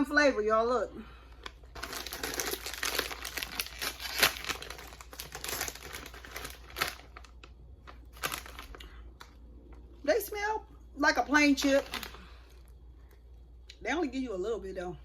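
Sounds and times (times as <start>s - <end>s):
chip bag crinkling: 1.4s - 9.8s, 11.5s - 12.8s.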